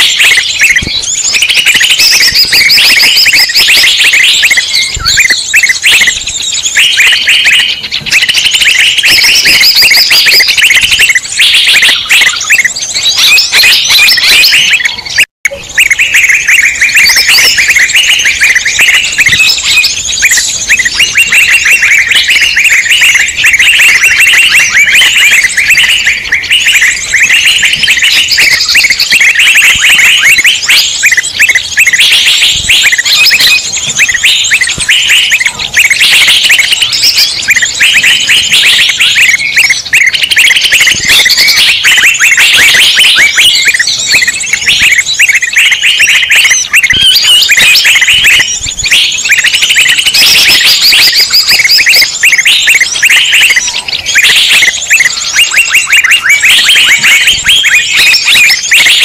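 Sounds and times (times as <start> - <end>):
songbirds chirping and trilling: 0.0 - 59.0.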